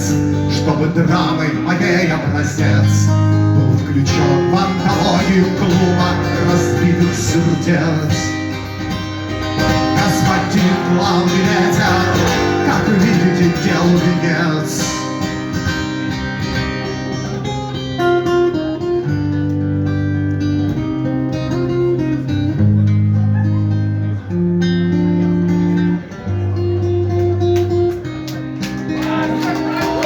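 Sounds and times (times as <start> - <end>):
strummed acoustic guitar: 0.0 - 30.0.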